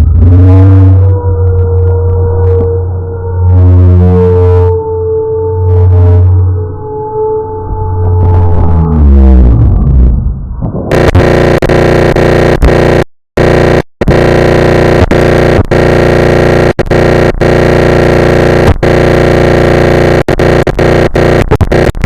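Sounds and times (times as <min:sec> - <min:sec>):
distorted electronic droning noise: 0:00.0 - 0:22.0.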